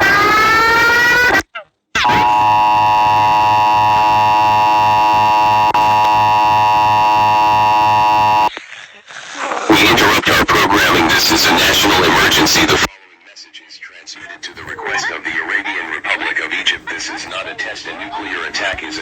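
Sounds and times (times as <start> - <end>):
harsh attention signal: 2.0 - 8.5.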